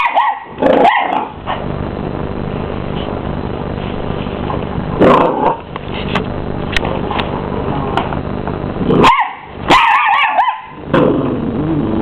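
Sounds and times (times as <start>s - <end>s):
puppy barking: 0.0s - 1.4s, 9.0s - 10.8s.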